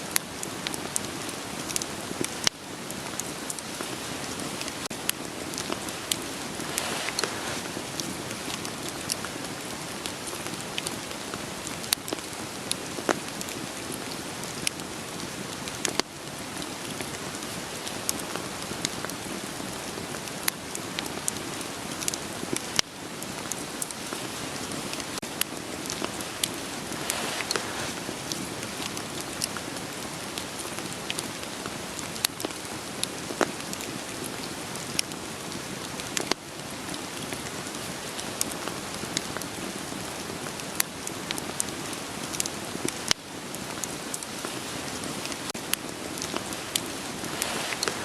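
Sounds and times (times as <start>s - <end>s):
burning firewood crackling: 0.0s - 48.0s
steady rain hiss: 0.0s - 48.0s.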